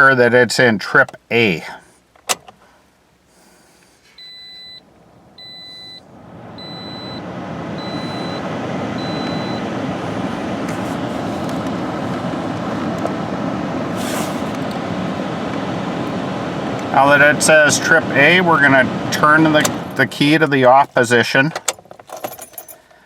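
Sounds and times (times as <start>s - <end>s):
blower fan rushing: 3.5s - 21.2s
car warning chime beeping: 4.2s - 10.7s.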